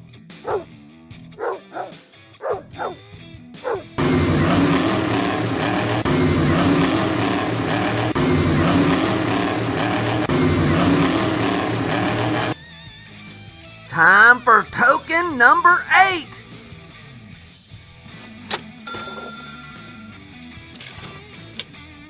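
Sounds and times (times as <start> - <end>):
dog barking: 0.4 - 0.7, 1.4 - 3.0, 3.6 - 3.9.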